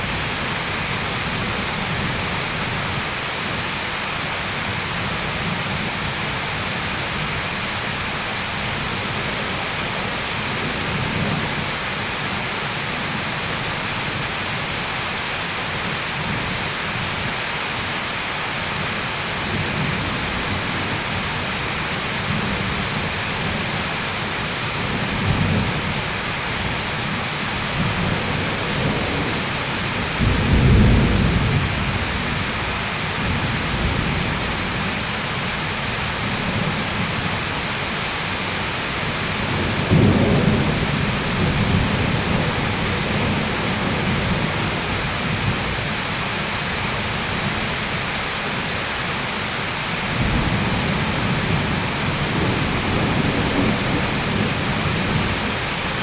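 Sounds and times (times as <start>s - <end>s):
heavy rain: 0.0s - 56.0s
rolling thunder: 27.1s - 34.9s, 39.4s - 45.6s, 50.2s - 55.7s.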